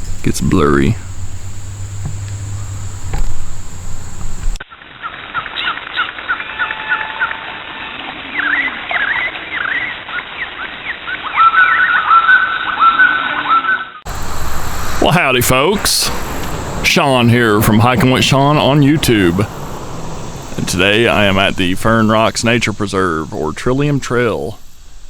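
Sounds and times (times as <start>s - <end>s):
bird chirps: 0.0s - 4.6s, 16.1s - 25.0s
steady low hum: 0.0s - 4.6s, 14.1s - 25.0s
whistled bird notes: 0.0s - 4.6s, 8.3s - 24.9s.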